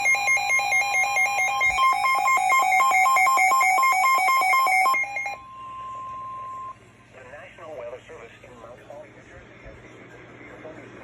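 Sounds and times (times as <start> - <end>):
electronic alarm warbling: 0.0 - 6.8
steady single alarm tone: 0.0 - 6.8.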